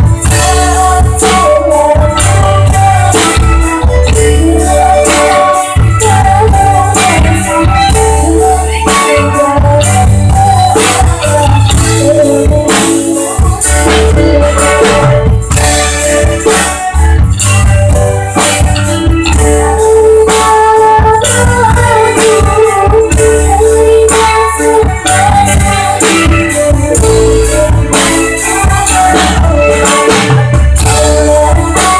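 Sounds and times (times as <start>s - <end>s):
child singing: 0.0s - 15.4s, 19.1s - 31.9s
music with drum beat and bass: 0.0s - 31.9s.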